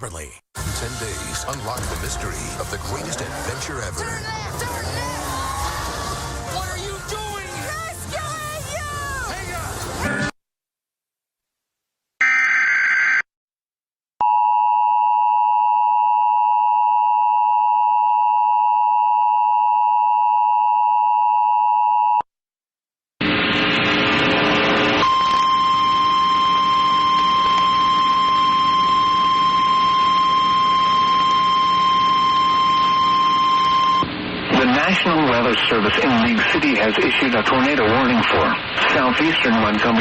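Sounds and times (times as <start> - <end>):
radio static: 0.6 - 8.2, 33.7 - 40.0
steady warning tone: 25.0 - 34.1
two-tone attention signal: 25.0 - 34.1.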